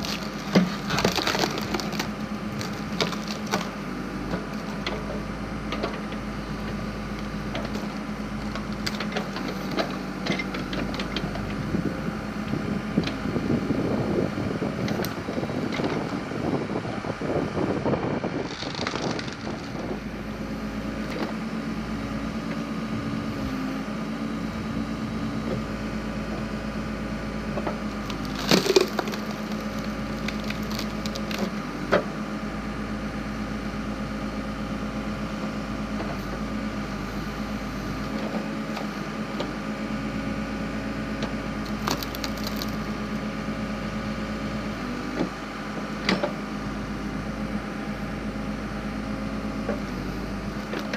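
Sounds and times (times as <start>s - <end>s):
log splitter cracking wood: 0.0s - 12.0s, 18.2s - 21.4s, 27.4s - 32.2s, 41.0s - 43.4s, 49.6s - 50.9s
backhoe engine running: 0.0s - 50.9s.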